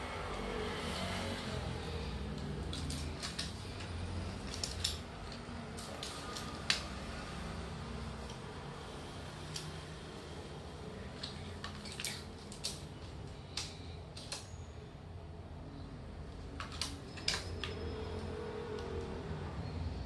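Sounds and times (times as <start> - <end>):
small toys clicking and tapping: 2.3 - 6.9, 11.2 - 14.5.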